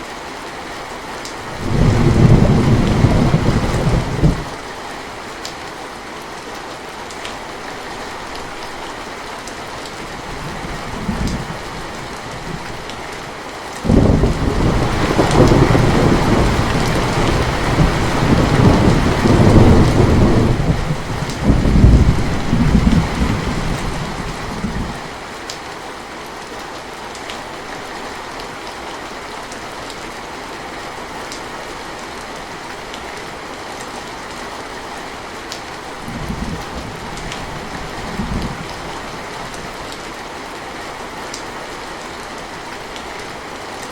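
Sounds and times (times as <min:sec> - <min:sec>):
steady rainfall: 0:00.0 - 0:43.9
rolling thunder: 0:01.6 - 0:04.6, 0:13.9 - 0:25.1.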